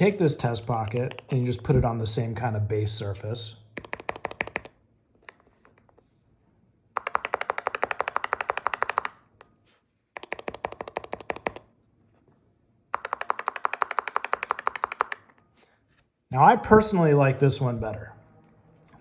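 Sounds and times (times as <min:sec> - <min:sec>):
rapid keyboard key clicks: 0:00.4 - 0:01.6, 0:03.8 - 0:06.0, 0:07.0 - 0:09.5, 0:10.2 - 0:11.7, 0:12.9 - 0:15.4.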